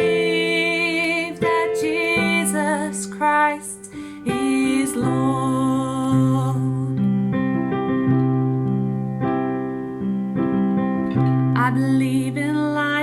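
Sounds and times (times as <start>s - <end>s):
woman singing with vibrato: 0.0s - 7.0s, 11.6s - 13.0s
electric piano: 0.0s - 13.0s.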